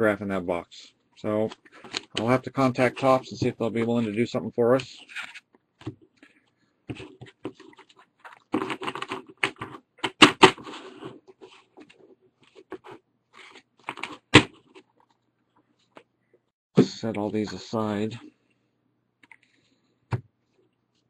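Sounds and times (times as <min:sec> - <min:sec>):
trading cards rustling: 0:04.9 - 0:15.1.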